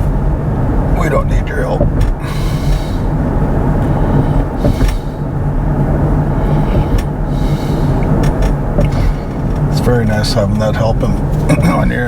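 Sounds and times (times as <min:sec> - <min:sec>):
road and tyre rumble in car cabin: 0:00.0 - 0:12.0.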